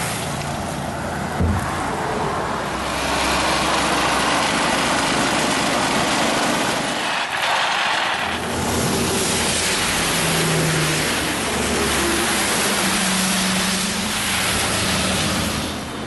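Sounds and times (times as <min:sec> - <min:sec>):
vehicle engine humming: 0:00.0 - 0:07.4
steady rushing noise: 0:00.0 - 0:16.0.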